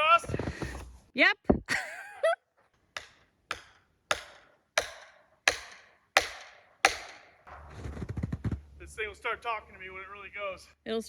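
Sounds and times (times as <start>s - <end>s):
felling wedges being struck: 2.7s - 8.6s.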